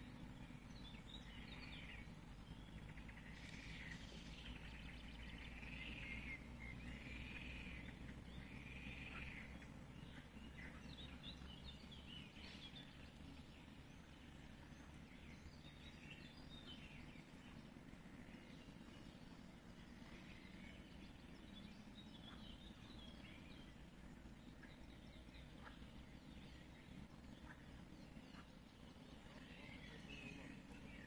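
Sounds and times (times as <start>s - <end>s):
songbird singing: 0.0s - 31.0s.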